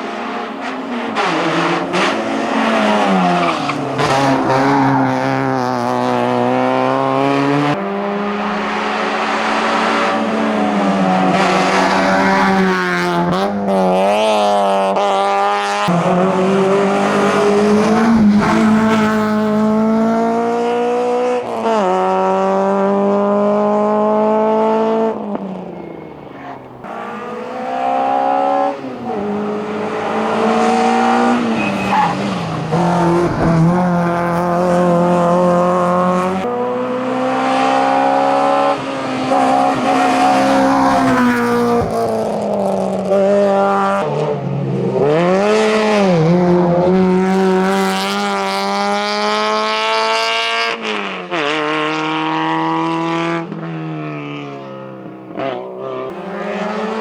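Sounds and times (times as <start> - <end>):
racing car engines revving high: 0.0 - 57.0.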